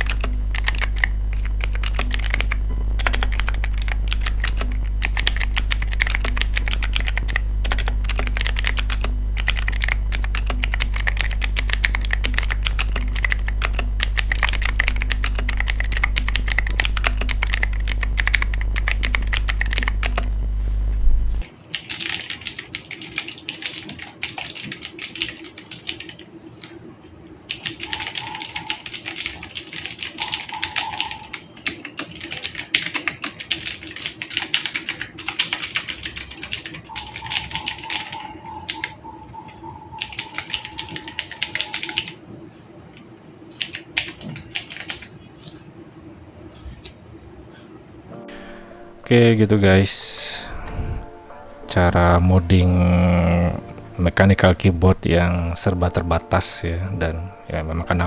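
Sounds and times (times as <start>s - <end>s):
steady low hum: 0.0s - 21.5s, 45.7s - 58.0s
clicky mechanical keyboard typing: 0.0s - 26.3s, 27.5s - 42.2s, 43.6s - 45.6s.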